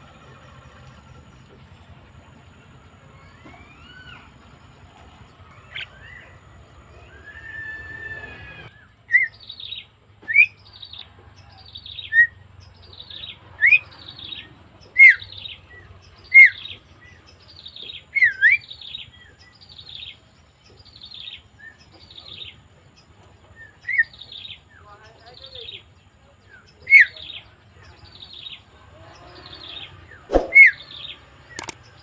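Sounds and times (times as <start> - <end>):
myna whistling calls: 3.1 - 4.5, 5.5 - 11.0, 11.8 - 20.2, 23.6 - 25.8, 26.5 - 27.4, 29.2 - 31.8.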